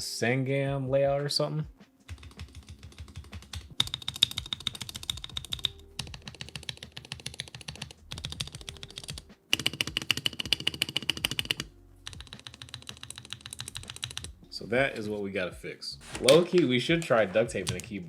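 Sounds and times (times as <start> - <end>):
typing on mechanical keyboard: 2.1 - 14.4.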